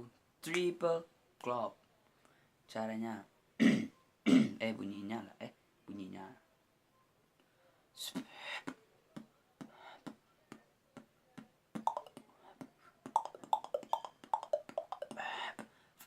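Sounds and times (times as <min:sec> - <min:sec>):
beatboxing mouth clicks and clops: 0:09.2 - 0:15.7.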